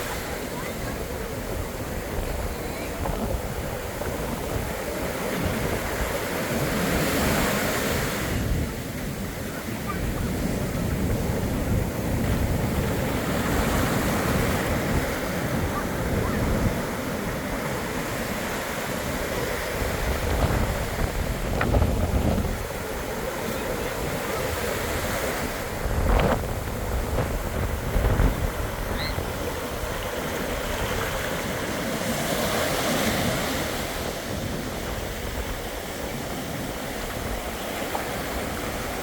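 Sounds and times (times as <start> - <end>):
surf breaking on beach: 0.0 - 39.0
wind gusting across microphone: 0.0 - 39.0.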